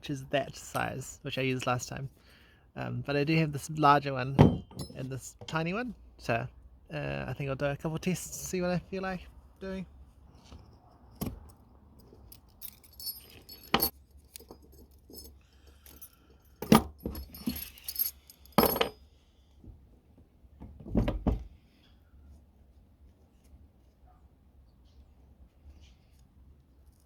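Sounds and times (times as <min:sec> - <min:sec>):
small copper pieces jingling: 0:12.0 - 0:19.0.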